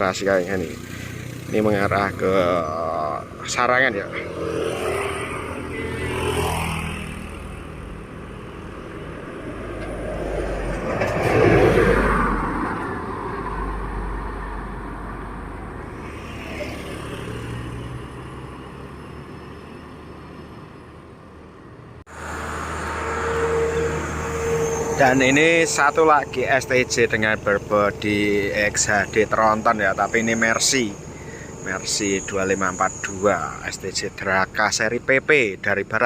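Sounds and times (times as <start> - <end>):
vehicle passing by: 0.0 - 34.4
diesel engine running: 22.1 - 34.2.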